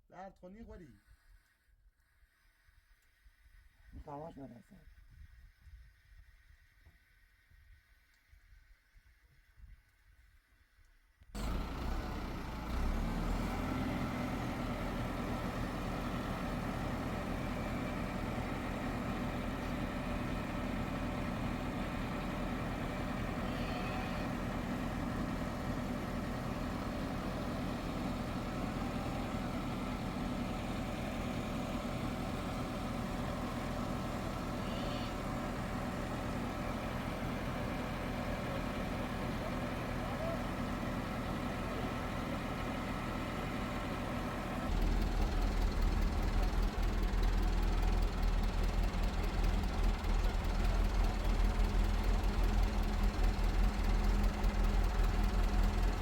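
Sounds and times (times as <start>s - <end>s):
vehicle engine running: 11.4s - 56.0s.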